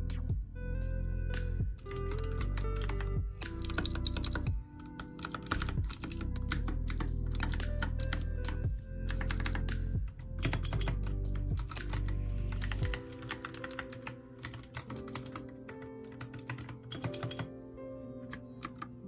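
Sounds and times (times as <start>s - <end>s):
background music with heavy bass: 0.0s - 13.1s
mechanical keyboard typing: 1.8s - 17.5s, 18.3s - 18.9s.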